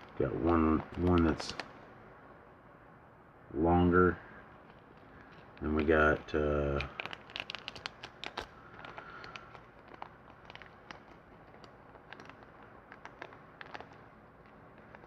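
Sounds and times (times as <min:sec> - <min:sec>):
packet rustling: 0:00.0 - 0:01.8, 0:04.5 - 0:15.0.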